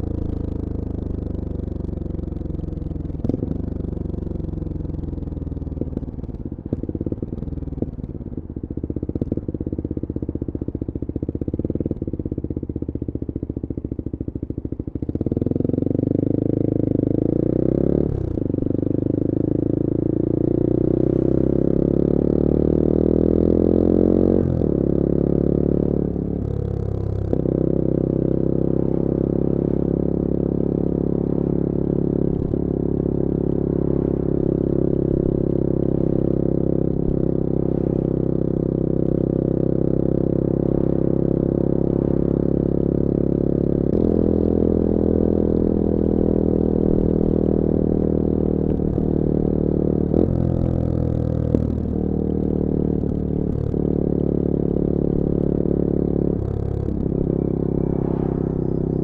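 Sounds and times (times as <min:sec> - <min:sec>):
motorcycle engine accelerating: 0:00.0 - 0:59.0.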